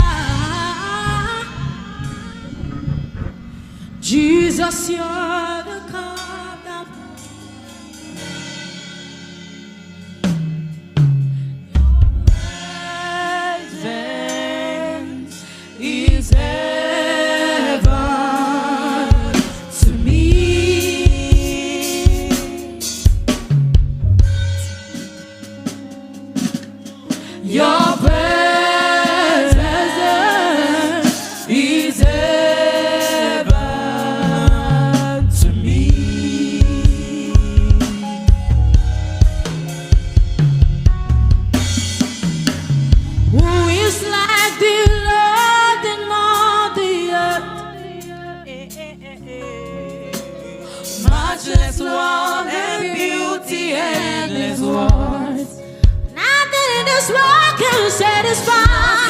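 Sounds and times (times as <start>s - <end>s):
bass drum and cymbal: 0.0s - 5.2s, 7.2s - 13.0s, 17.8s - 45.5s
held keyboard chord: 0.0s - 59.0s.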